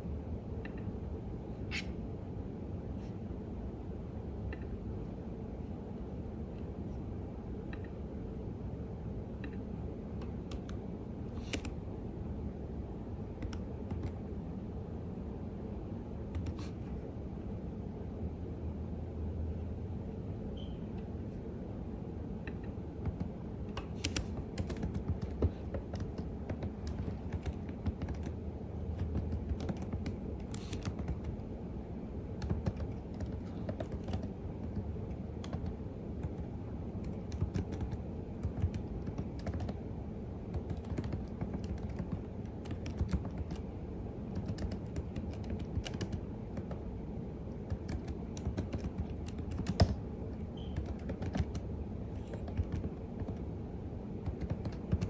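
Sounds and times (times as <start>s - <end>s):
low background hum: 0.0s - 55.0s
computer keyboard typing: 10.2s - 10.8s, 13.4s - 14.2s, 16.3s - 16.7s, 23.0s - 31.4s, 32.4s - 39.8s, 40.5s - 43.7s, 44.3s - 46.8s, 47.5s - 53.5s, 54.2s - 55.0s.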